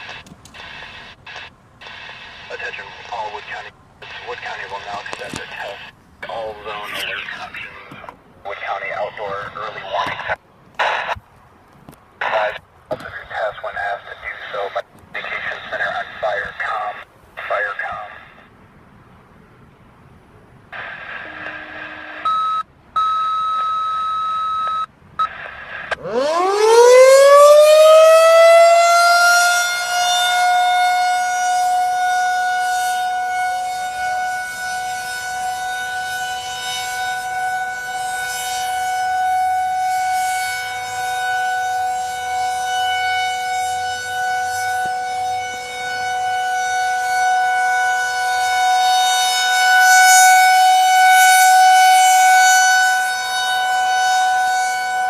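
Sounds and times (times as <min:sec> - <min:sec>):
warning siren wailing: 0:00.0 - 0:11.1, 0:20.8 - 0:55.0
broken electronic tones: 0:20.8 - 0:26.1.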